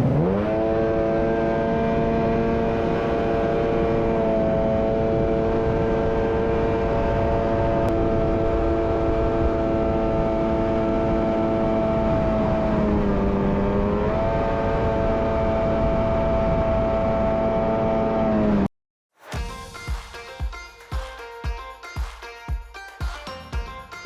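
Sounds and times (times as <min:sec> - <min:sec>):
wind: 0:00.0 - 0:18.4
jet ski engine running: 0:00.0 - 0:18.6.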